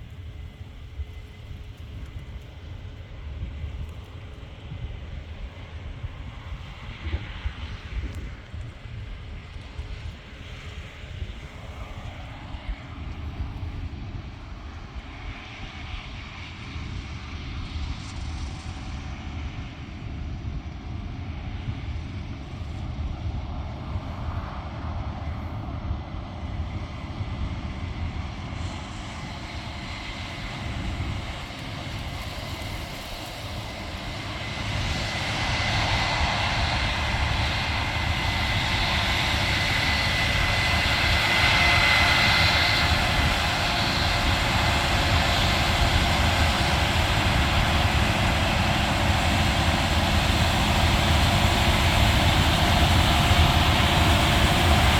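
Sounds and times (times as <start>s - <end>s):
combine harvester engine rumble: 28.6s - 54.9s.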